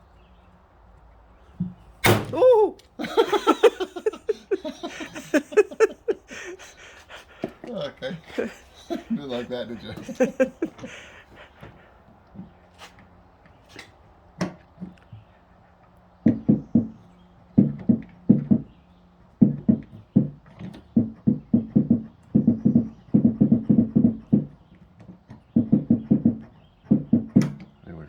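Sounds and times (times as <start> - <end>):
dull tapping on metal panel: 16.2 - 17.0, 17.6 - 18.8, 19.4 - 27.7.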